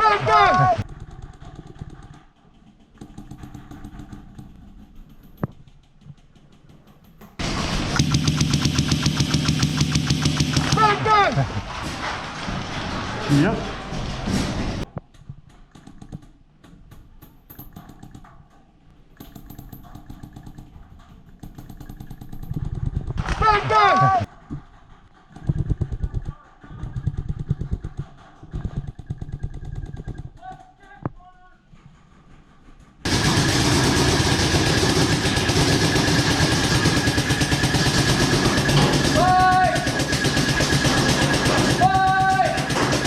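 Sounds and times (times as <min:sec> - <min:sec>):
engine running with rapid pulsing: 0:07.4 - 0:12.4, 0:33.1 - 0:43.0.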